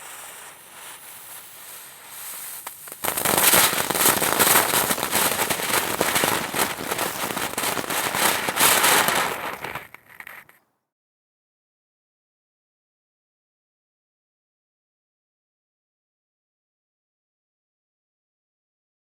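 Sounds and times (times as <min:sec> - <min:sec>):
firework fountain hissing: 0:00.0 - 0:10.5
dense firework crackling: 0:00.0 - 0:10.6.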